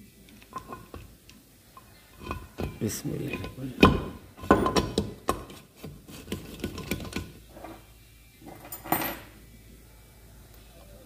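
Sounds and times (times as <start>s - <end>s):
metal clank: 1.8s - 5.6s.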